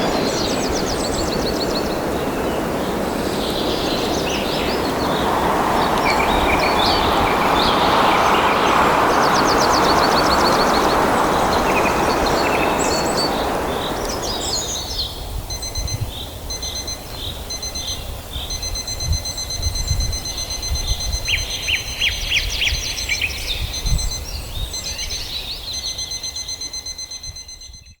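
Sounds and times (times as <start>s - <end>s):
small birds chirping: 0.0s - 28.0s
wind through leaves: 0.0s - 28.0s
electronic alarm beeps: 15.5s - 22.2s, 22.8s - 28.0s.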